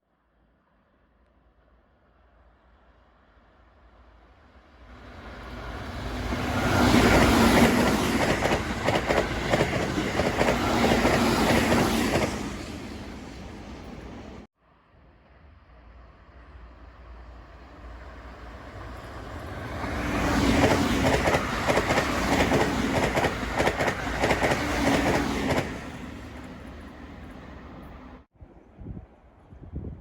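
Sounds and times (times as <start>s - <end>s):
train wheels clattering: 6.7s - 12.7s, 20.3s - 26.5s.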